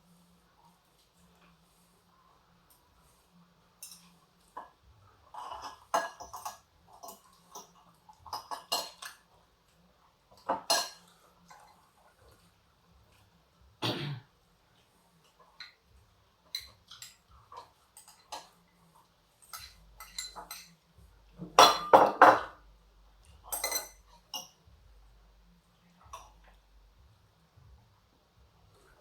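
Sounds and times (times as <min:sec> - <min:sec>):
cutlery clinking on a plate: 0:03.8 - 0:09.3, 0:10.4 - 0:11.8, 0:16.5 - 0:18.6, 0:19.4 - 0:20.8, 0:21.4 - 0:22.6, 0:23.5 - 0:24.6.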